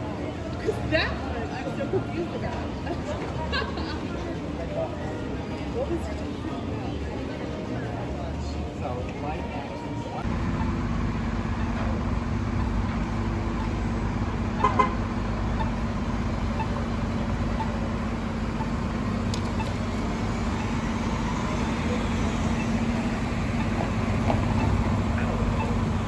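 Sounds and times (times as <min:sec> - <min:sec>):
engine humming steadily: 0:10.0 - 0:26.0.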